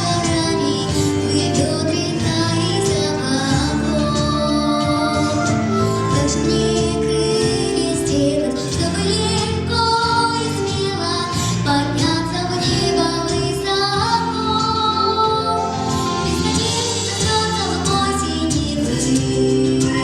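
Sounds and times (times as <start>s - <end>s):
instrumental accompaniment: 0.0s - 20.0s
woman singing: 0.0s - 20.0s.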